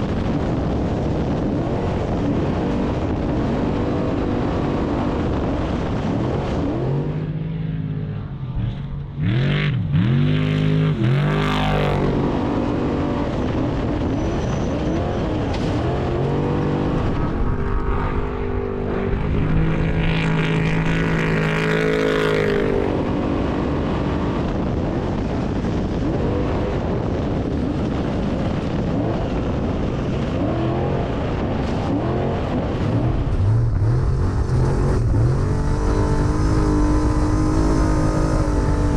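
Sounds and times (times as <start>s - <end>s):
race vehicle engine revving: 8.4s - 28.0s, 28.8s - 38.9s.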